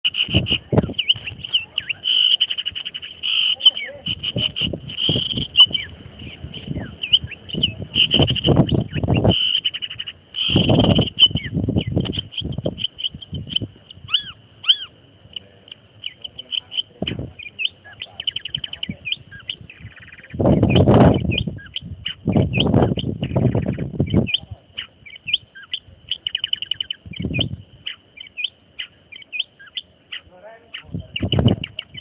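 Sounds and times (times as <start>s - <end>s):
bird chirping and trilling: 0.0s - 32.0s.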